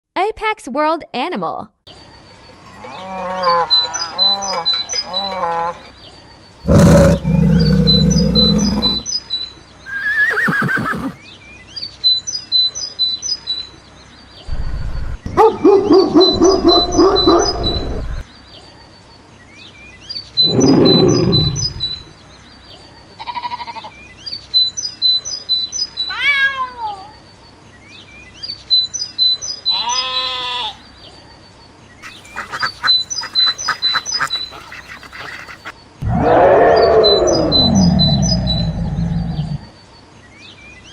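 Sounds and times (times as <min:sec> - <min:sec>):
animal calls: 0:06.6 - 0:09.1, 0:15.3 - 0:18.2, 0:20.4 - 0:22.1, 0:32.0 - 0:39.7
high chirping: 0:06.6 - 0:09.1, 0:14.5 - 0:18.2, 0:20.4 - 0:22.1.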